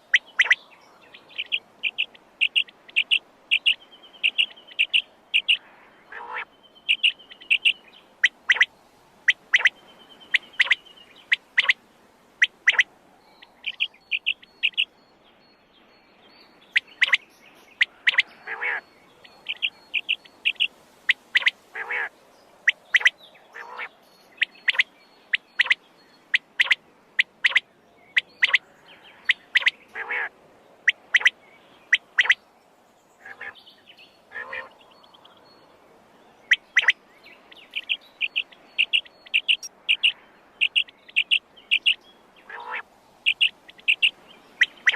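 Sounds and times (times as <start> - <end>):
quail calling: 0.0 - 0.6, 1.3 - 8.7, 9.3 - 11.8, 12.4 - 12.9, 13.5 - 14.9, 16.8 - 17.2, 17.8 - 22.1, 22.7 - 28.6, 29.2 - 30.3, 30.9 - 31.3, 31.9 - 32.4, 33.2 - 33.6, 34.3 - 34.8, 36.5 - 37.0, 37.6 - 44.9.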